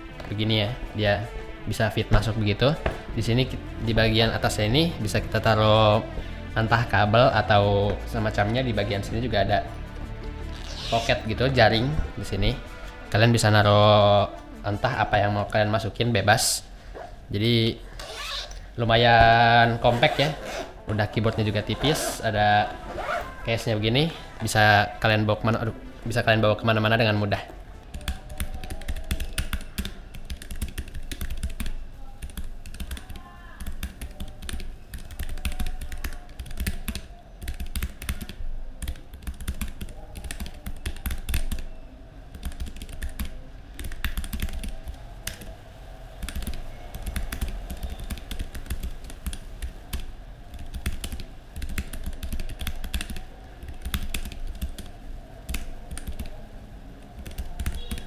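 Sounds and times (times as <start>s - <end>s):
mechanical keyboard typing: 27.8s - 41.7s, 42.3s - 45.5s, 46.2s - 56.4s, 57.1s - 58.0s.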